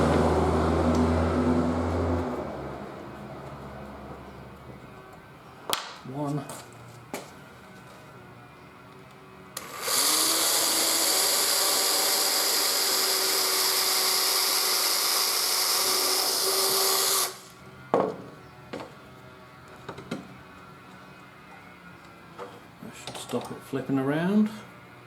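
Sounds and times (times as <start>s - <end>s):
electric drill boring through wood: 9.6s - 17.5s.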